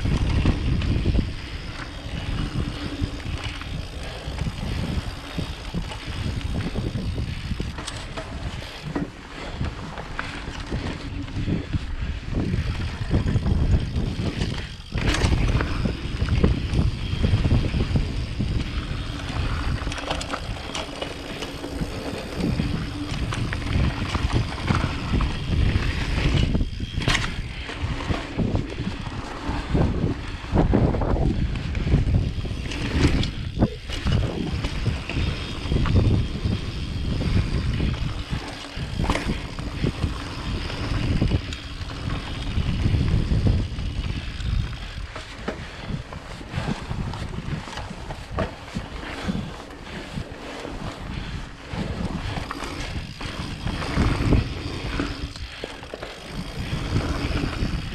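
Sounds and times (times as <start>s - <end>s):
wind rushing over microphone: 0.0s - 57.9s
tyres rattling over rocks: 12.4s - 30.1s, 31.8s - 57.9s.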